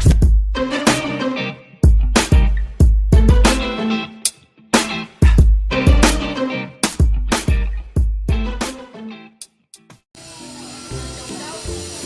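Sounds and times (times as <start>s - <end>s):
drum hits: 0.0s - 0.5s, 1.8s - 3.7s, 4.8s - 8.7s
plucked guitar-like notes: 5.7s - 7.7s.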